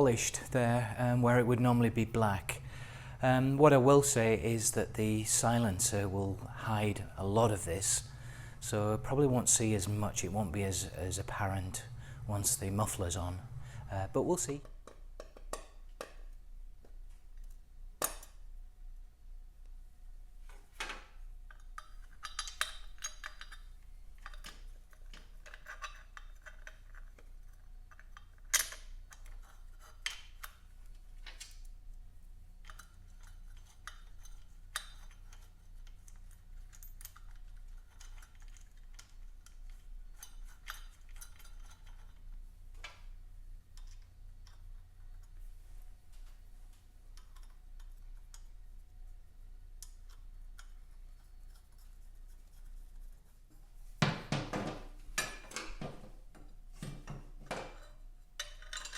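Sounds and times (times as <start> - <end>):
hand tools and metal parts clinking: 21.5 - 31.7, 32.6 - 43.0, 54.3 - 58.9.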